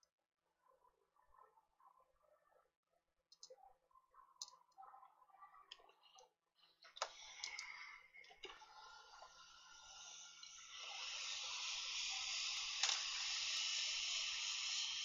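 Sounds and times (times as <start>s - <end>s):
hot-air station hissing: 7.0s - 15.0s.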